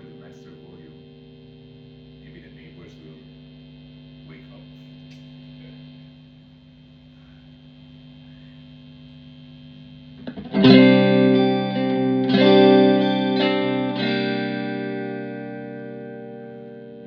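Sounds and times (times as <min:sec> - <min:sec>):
electric guitar strums: 0:00.0 - 0:02.8, 0:10.1 - 0:17.0
guitar amp hum: 0:00.0 - 0:17.0.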